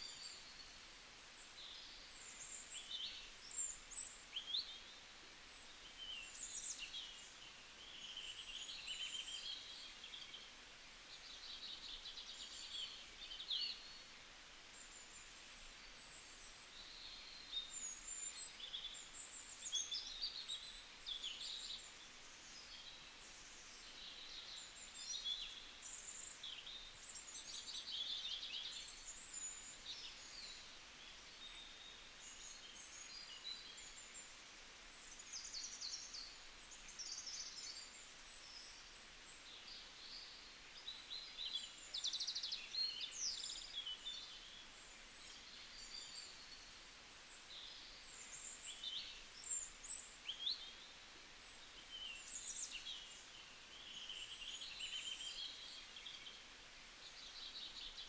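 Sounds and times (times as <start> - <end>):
faint steady hiss: 0.0 - 58.0.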